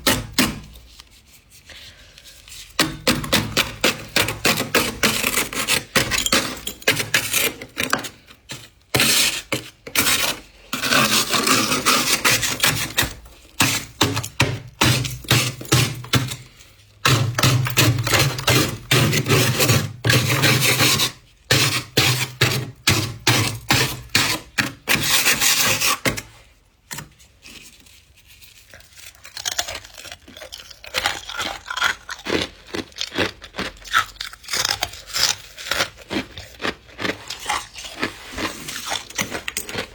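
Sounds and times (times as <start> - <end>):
scraper scraping frost: 6.9 - 14.2, 17.0 - 26.2.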